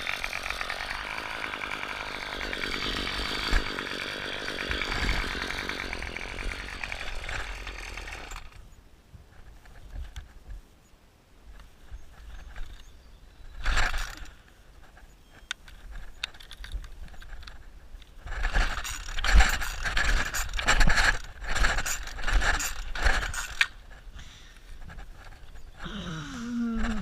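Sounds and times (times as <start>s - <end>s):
recoil starter rope pulls: 0.0s - 8.6s, 13.5s - 14.4s, 18.2s - 24.1s.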